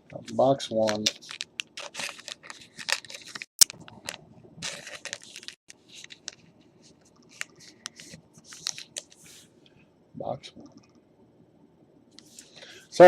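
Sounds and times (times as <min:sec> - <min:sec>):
plastic wrapper crinkling: 0:00.8 - 0:06.5.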